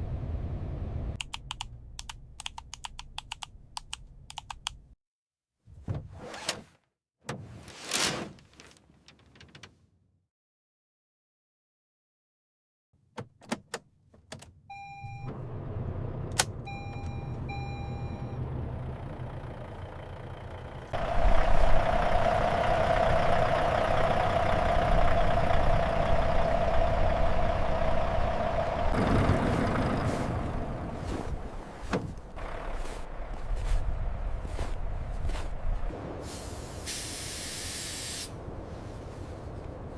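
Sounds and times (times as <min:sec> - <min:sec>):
diesel engine starting and idling: 0:14.7 - 0:38.3.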